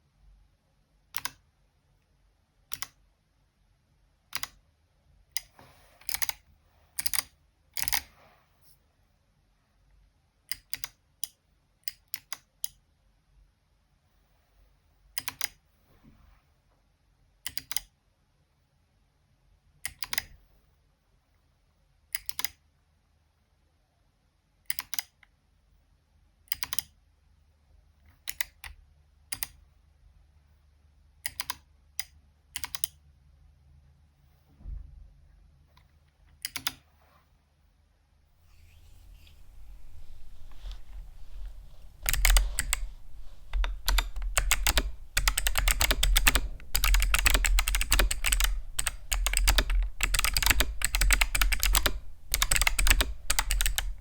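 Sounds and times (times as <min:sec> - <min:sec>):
clicky mechanical keyboard typing: 0:05.4 - 0:06.4, 0:07.0 - 0:08.1, 0:19.9 - 0:20.4, 0:38.6 - 0:54.0.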